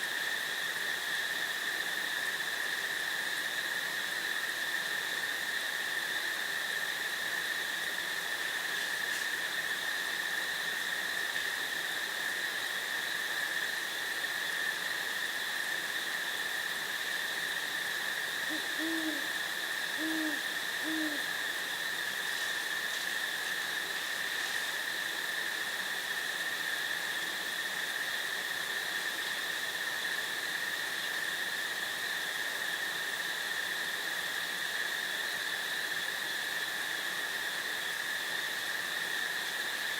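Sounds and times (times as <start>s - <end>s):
high-pitched insect drone: 0.2s - 39.9s
low owl hoots: 18.4s - 21.4s.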